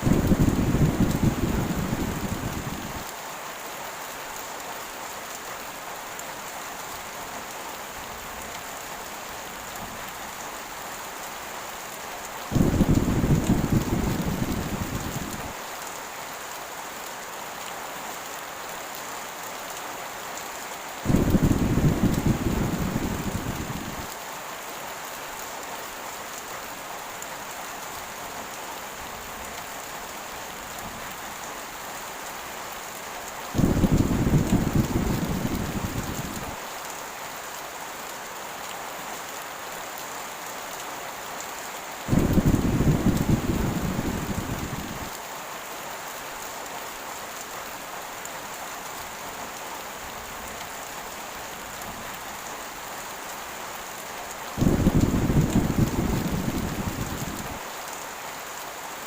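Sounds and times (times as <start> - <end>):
thunder rumbling: 0.0 - 3.0, 12.5 - 15.5, 21.1 - 24.1, 33.6 - 36.6, 42.1 - 45.1, 54.6 - 57.6
heavy rain: 0.0 - 59.0.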